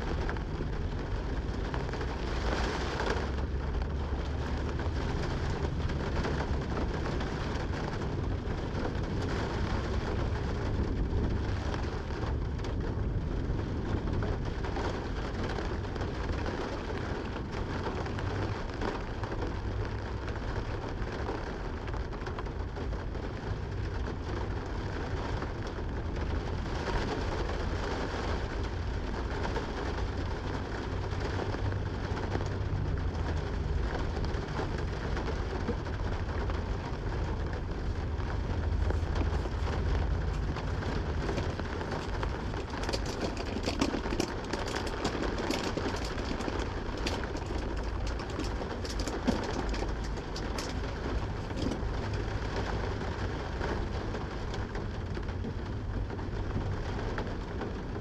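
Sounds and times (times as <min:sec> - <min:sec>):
rain falling: 0:00.0 - 0:58.0
deep low rumble: 0:31.8 - 0:56.8.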